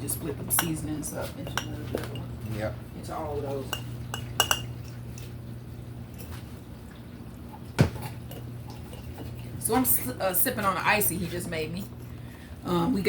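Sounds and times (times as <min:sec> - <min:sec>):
steady low hum: 0:00.0 - 0:13.0
glass jars and utensils clinking: 0:01.4 - 0:02.6, 0:03.6 - 0:05.0.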